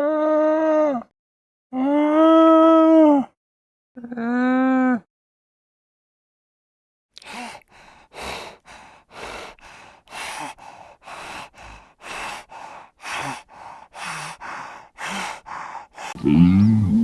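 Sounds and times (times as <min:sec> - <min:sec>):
animal breathing heavily: 0:07.2 - 0:17.0
faint animal grunt: 0:16.1 - 0:17.0.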